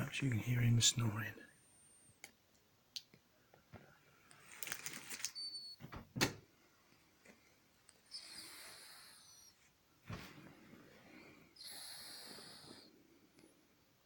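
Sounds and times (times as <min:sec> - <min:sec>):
cat snoring softly: 0:08.1 - 0:09.6, 0:11.0 - 0:13.5.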